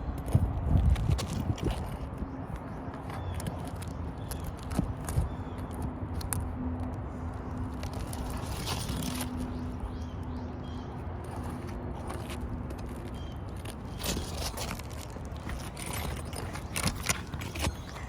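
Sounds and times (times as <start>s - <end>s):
scrape on shingle roof: 11.2s - 18.0s.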